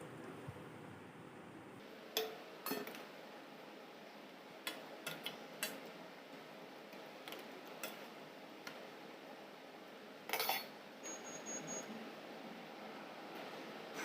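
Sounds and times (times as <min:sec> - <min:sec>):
utensil clinking against pot: 0:02.2 - 0:03.0, 0:10.3 - 0:10.7.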